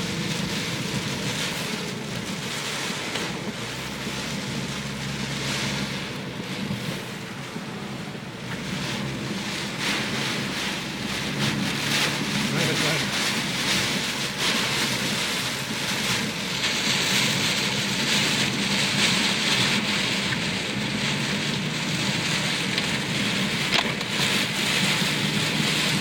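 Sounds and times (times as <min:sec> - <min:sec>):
heavy rain: 0:00.0 - 0:26.0.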